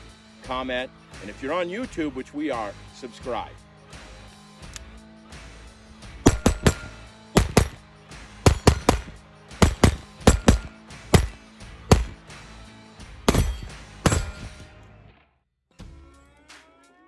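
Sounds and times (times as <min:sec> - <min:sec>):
background music: 0:00.0 - 0:14.8
pistol shots: 0:06.3 - 0:07.8, 0:08.5 - 0:12.2, 0:13.3 - 0:14.7.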